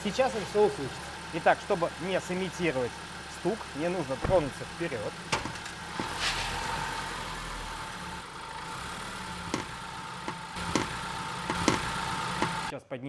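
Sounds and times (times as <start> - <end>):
car engine running: 0.0 - 12.7
sharp metallic knocks: 9.4 - 12.7.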